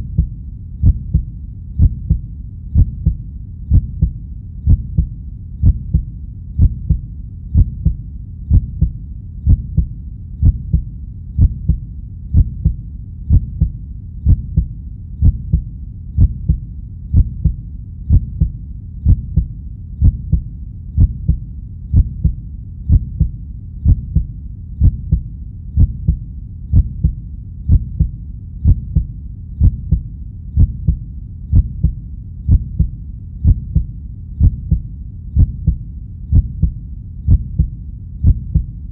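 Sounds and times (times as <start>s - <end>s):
heartbeat thumps: 0.0s - 38.8s.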